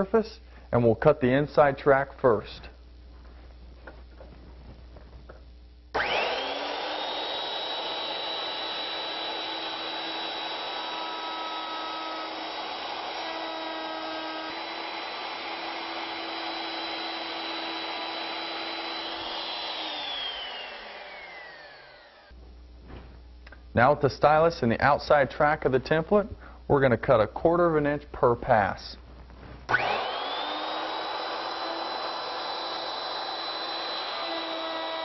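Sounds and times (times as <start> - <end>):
router whining: 5.9 - 22.4, 29.7 - 35.0.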